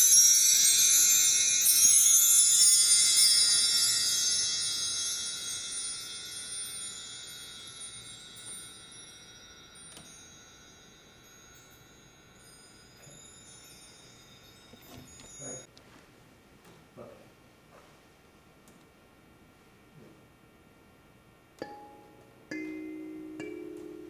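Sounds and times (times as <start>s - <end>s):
metal chimes ringing: 0.0s - 15.7s, 21.6s - 24.0s.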